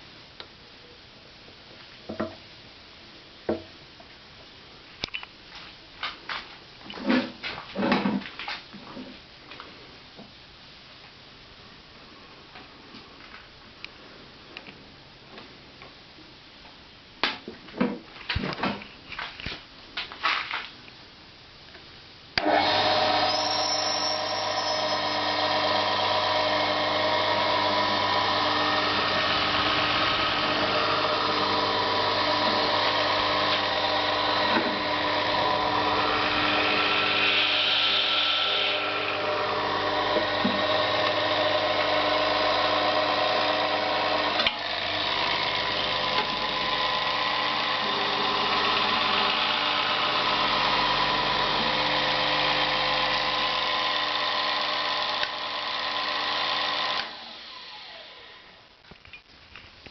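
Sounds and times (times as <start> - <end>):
electric drill running: 22.4 - 58.5.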